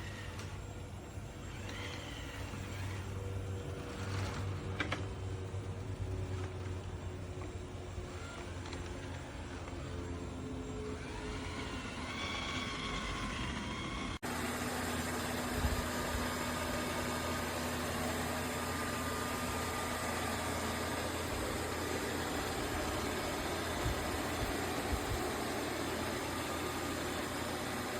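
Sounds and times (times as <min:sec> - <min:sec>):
robot vacuum humming: 0:00.0 - 0:27.9.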